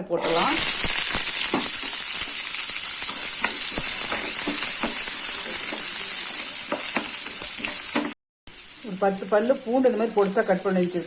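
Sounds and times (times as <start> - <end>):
shallots sizzling in hot oil: 0.1 - 11.0
clicks of stirring against pan: 0.2 - 8.2.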